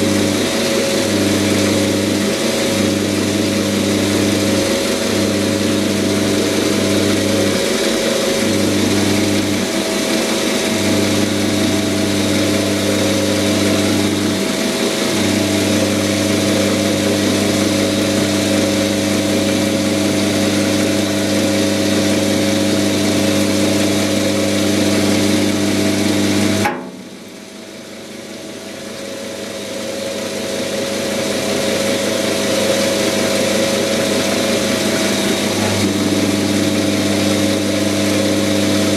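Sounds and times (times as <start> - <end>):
lathe machine hum: 0.0 - 38.9.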